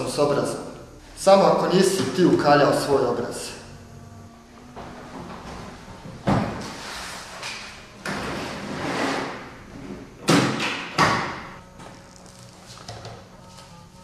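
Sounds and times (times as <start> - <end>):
suitcase scraping and rustling: 8.1 - 10.1.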